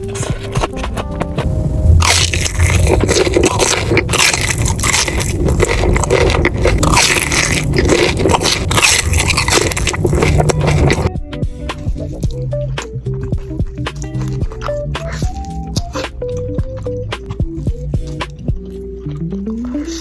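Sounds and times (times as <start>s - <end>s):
crunchy chewing: 0.0s - 1.4s, 2.0s - 20.0s.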